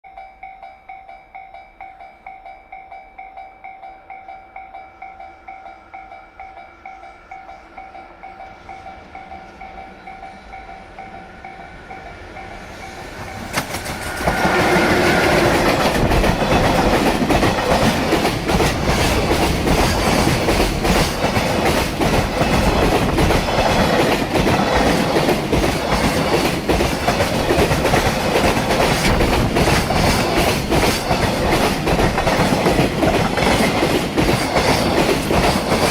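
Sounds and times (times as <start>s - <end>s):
train wheels clattering over rail joints: 13.2s - 35.9s.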